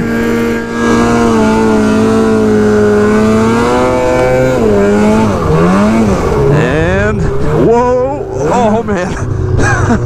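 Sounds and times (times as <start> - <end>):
snowmobile engine revving: 0.0 - 10.0.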